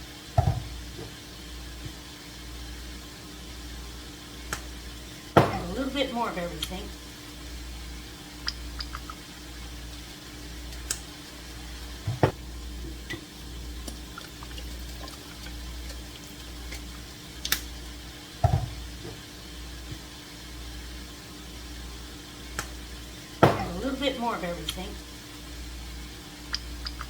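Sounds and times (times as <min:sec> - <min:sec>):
liquid pouring into a pan: 0:10.8 - 0:19.0.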